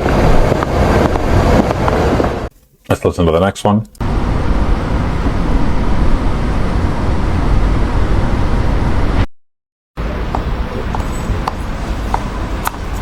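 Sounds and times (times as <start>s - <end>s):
dense bass-heavy rumble: 4.0s - 9.3s.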